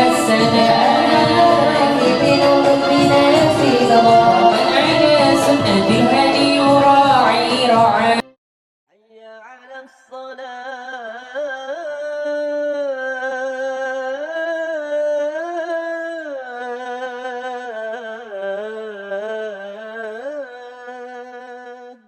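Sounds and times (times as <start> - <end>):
person singing unaccompanied: 0.0 - 8.4.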